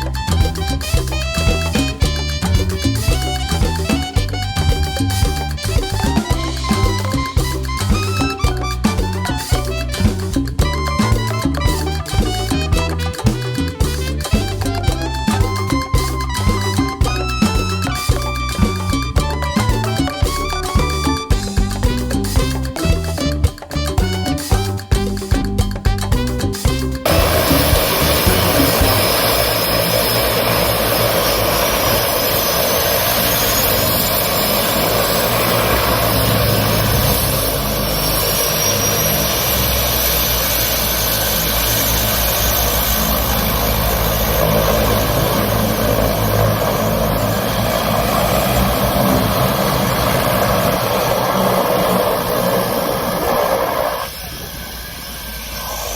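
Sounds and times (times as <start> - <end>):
aircraft engine rushing: 0.0 - 55.9
faint high whine: 27.1 - 55.9.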